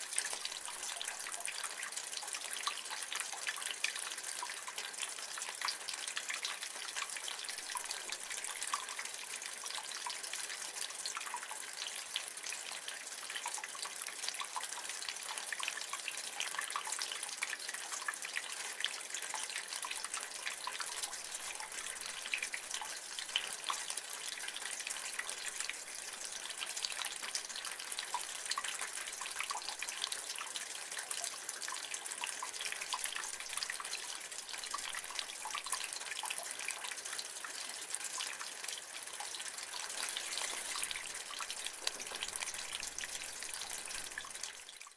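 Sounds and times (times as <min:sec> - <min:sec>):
rainwater trickling from gutter: 0:00.0 - 0:44.9
water drips landing: 0:37.1 - 0:44.9.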